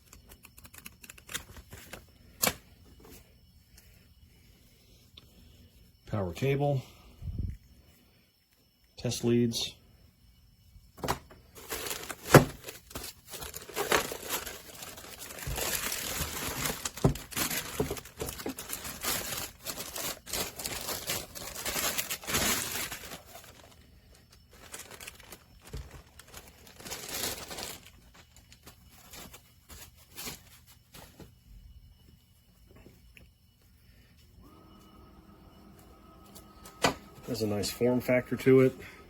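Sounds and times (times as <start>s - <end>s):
plastic packaging crinkling: 11.5s - 31.0s.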